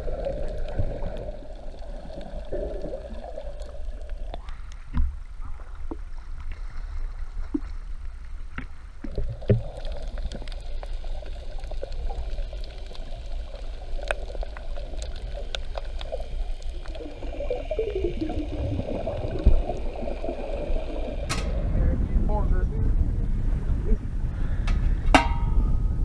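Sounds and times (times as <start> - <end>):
water rushing along hull: 0.0 - 25.7
steady low rumble: 0.0 - 26.0
sharp clicks and knocks: 21.2 - 21.6.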